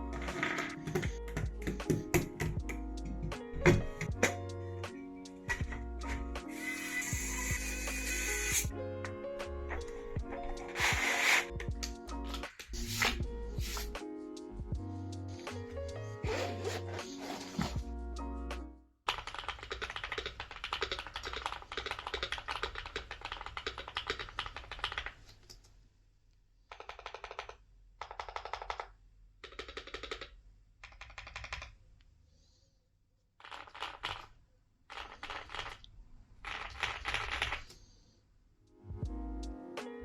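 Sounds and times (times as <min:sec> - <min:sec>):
mechanical keyboard typing: 0:19.1 - 0:25.2, 0:26.7 - 0:31.7, 0:33.4 - 0:34.3, 0:34.9 - 0:35.8, 0:36.5 - 0:37.6.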